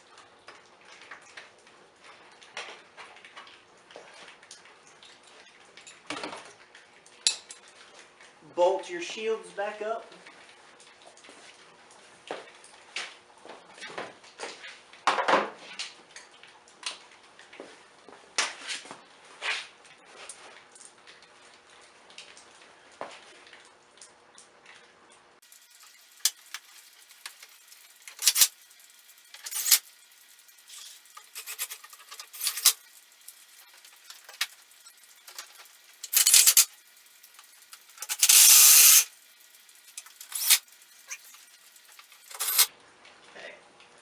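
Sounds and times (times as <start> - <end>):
hand tools clicking and clinking: 28.1 - 28.5, 29.4 - 29.8, 30.7 - 32.8, 35.3 - 36.8, 38.0 - 39.1, 40.0 - 42.7.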